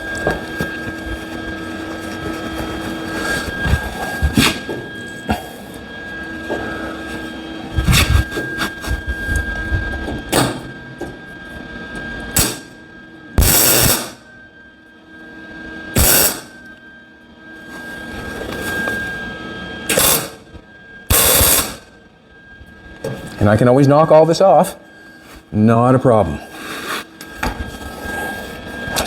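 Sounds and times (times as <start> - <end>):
steady background hum: 0.0 - 29.0
welding crackling bursts: 13.4 - 14.2, 16.0 - 16.5, 19.9 - 20.4, 21.1 - 21.9.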